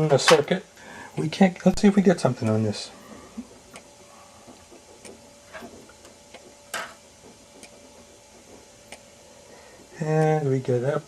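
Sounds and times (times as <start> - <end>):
tester probes clicking: 3.6 - 3.9, 7.2 - 9.1.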